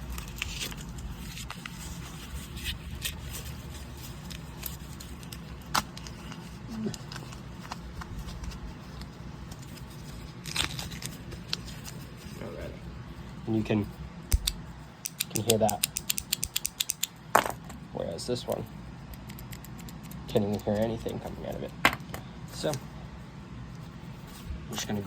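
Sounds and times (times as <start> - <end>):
packaging crinkling and tearing: 0.0 - 12.1
sharp click: 14.3 - 17.1.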